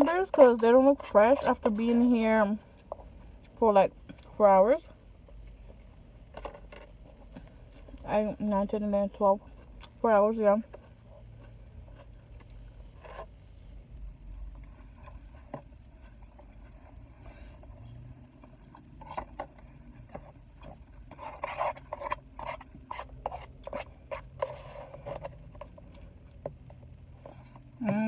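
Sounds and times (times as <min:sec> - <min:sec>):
chewing and crunching food: 0:09.4 - 0:10.0, 0:14.3 - 0:27.8.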